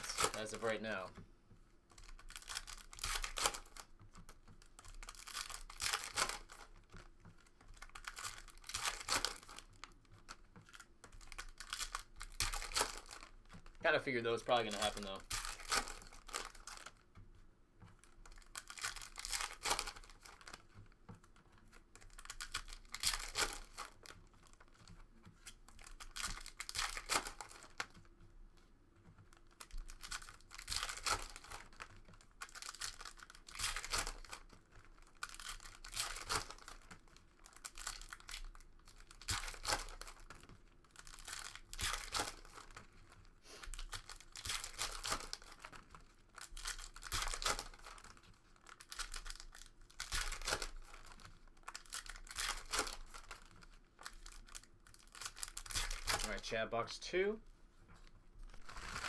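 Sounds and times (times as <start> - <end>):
foil packs tearing: 0.0 - 1.1, 2.1 - 3.9, 4.8 - 6.7, 7.8 - 9.7, 11.2 - 17.0, 18.3 - 20.6, 22.0 - 24.6, 25.8 - 27.9, 29.5 - 36.8, 37.5 - 42.8, 43.5 - 56.5, 58.5 - 59.0
wrappers crinkling: 0.0 - 1.2, 1.9 - 28.2, 29.0 - 57.1, 57.9 - 59.0.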